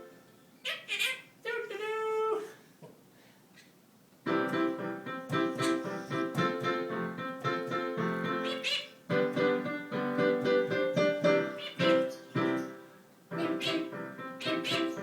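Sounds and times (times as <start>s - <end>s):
piano playing chords: 0.0s - 0.3s, 4.3s - 15.0s.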